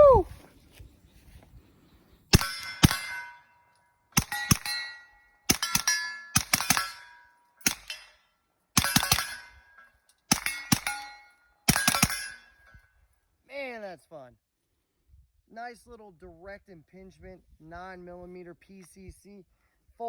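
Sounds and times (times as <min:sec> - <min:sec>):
metallic ring of steel target: 0:02.4 - 0:12.9.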